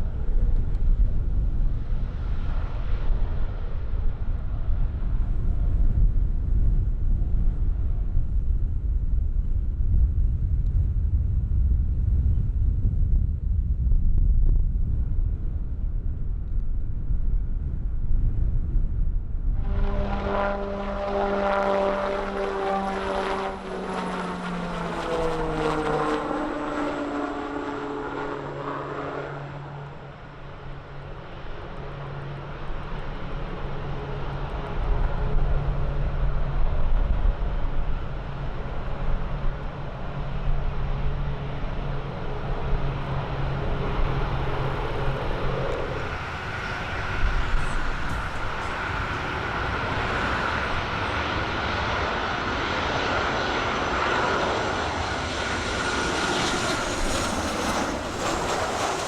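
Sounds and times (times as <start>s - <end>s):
wind rumble on microphone: 0.0s - 59.0s
propeller airplane engine passing: 15.0s - 59.0s.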